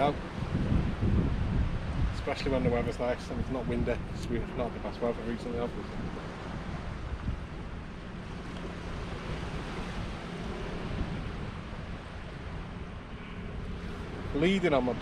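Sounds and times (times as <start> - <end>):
small waves breaking on sand: 0.0 - 15.0
wind noise on microphone: 0.0 - 15.0.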